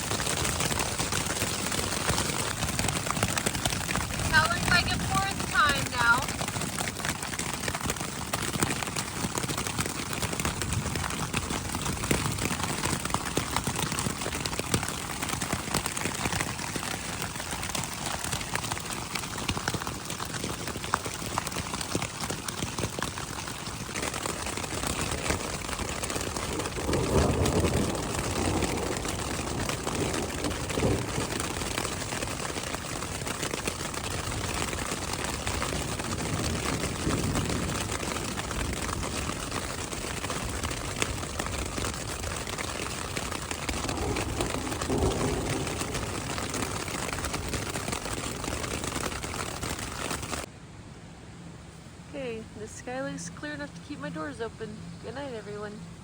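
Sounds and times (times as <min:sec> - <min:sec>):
hail and rain pattering on a tent: 0:00.0 - 0:50.5.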